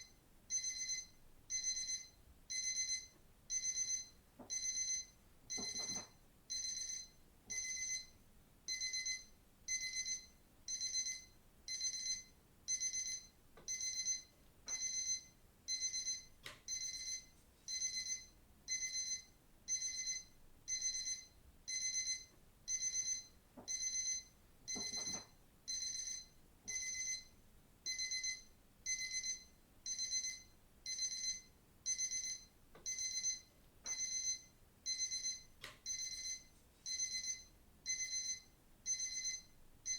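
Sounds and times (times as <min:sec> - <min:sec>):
watch alarm beeping: 0:00.0 - 0:08.1, 0:08.7 - 0:27.3, 0:27.9 - 0:39.9.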